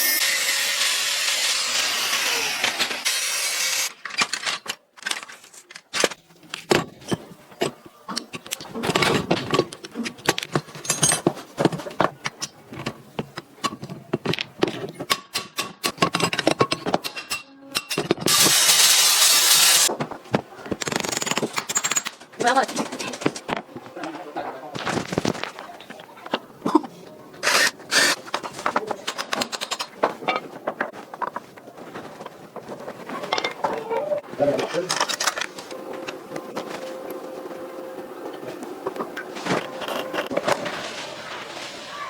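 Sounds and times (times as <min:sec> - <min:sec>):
power tool working wood: 0:00.0 - 0:03.9
knocks and clatter of handling: 0:04.0 - 0:18.3, 0:28.2 - 0:33.9.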